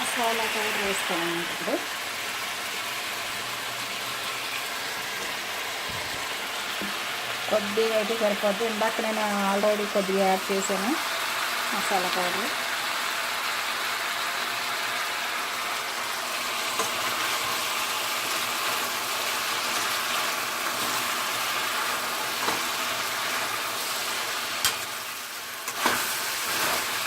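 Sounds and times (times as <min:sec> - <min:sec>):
chicken sizzling in oil: 0:00.0 - 0:27.0.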